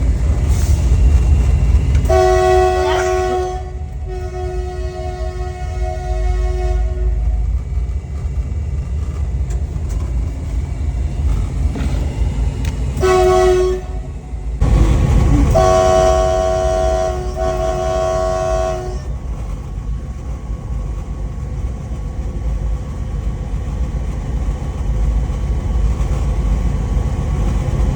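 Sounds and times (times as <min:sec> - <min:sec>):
locomotive low rumble: 0:00.0 - 0:27.9
locomotive horn blasts: 0:02.0 - 0:07.5, 0:13.0 - 0:14.2, 0:15.3 - 0:19.1.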